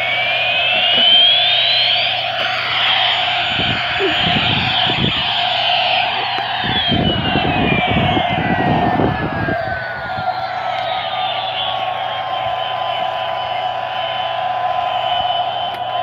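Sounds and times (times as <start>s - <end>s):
toy motor whirring: 0.0s - 7.6s
toy electronic siren tone: 0.0s - 16.0s.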